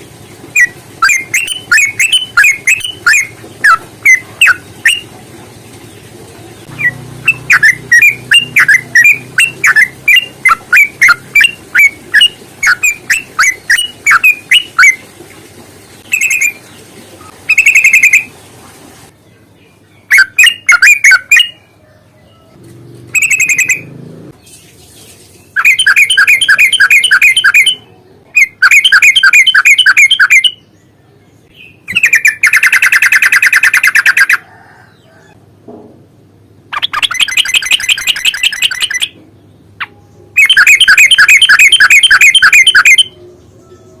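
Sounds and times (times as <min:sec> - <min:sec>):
bulbul fast trilled calls: 0:00.0 - 0:05.2, 0:06.6 - 0:15.1, 0:16.0 - 0:18.3, 0:20.0 - 0:21.6, 0:23.2 - 0:23.9, 0:25.6 - 0:30.7, 0:31.5 - 0:34.4, 0:36.7 - 0:39.2, 0:39.8 - 0:43.2.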